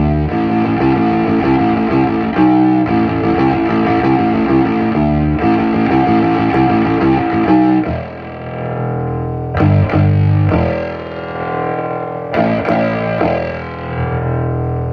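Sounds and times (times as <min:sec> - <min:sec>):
plucked fretless electric bass: 0:00.0 - 0:14.9.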